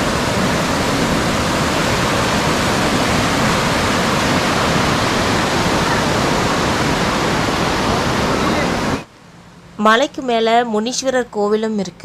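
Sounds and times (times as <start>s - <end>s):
waterfall rushing: 0.0s - 9.1s.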